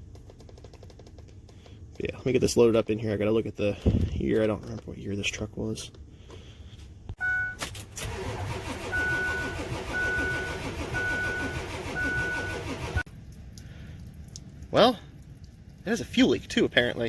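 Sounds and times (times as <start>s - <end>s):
diesel engine cranking on starter: 7.6s - 13.1s.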